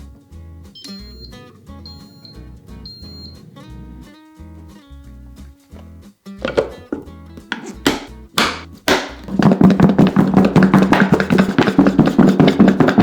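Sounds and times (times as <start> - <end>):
background music: 0.0 - 13.0
sharp knocks: 7.6 - 13.0
fast dense clatter: 8.9 - 13.0.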